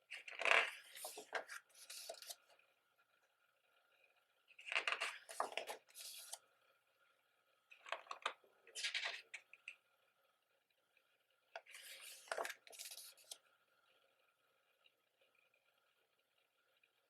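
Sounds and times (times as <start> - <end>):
book pages turning: 0.1 - 2.5, 4.6 - 6.4, 7.8 - 9.5, 11.6 - 13.4.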